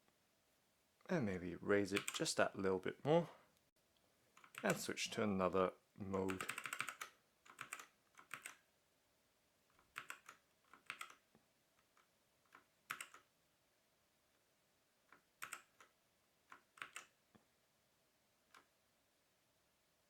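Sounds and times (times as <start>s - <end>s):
mechanical keyboard keys clacking: 2.0s - 2.2s, 6.2s - 8.6s, 9.9s - 11.2s, 12.9s - 13.2s, 16.6s - 17.1s.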